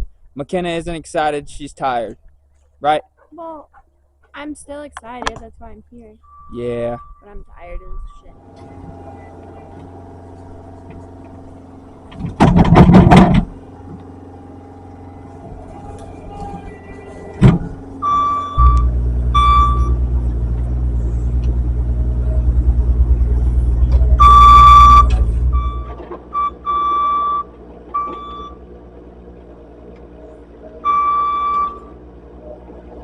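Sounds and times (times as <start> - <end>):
skid steer engine running: 4.5 - 33.0
reversing alarm beeping: 6.2 - 10.6, 14.6 - 20.2, 24.1 - 28.6, 30.8 - 32.0.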